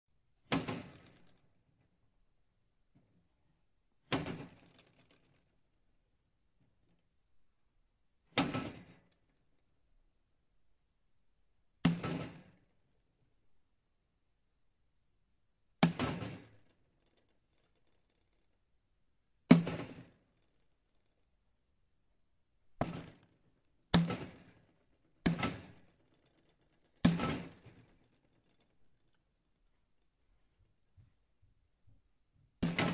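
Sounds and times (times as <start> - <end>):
door frame rattling: 32.6 - 32.9.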